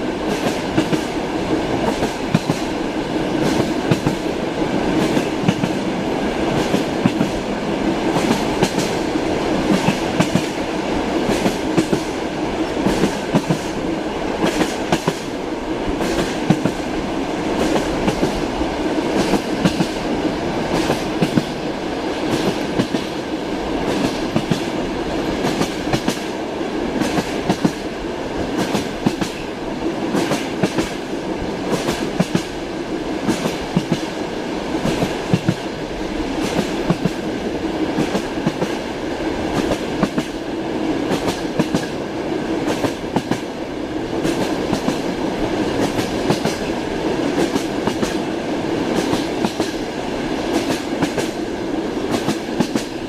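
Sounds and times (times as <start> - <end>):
train carriage rumble: 0.0 - 53.0.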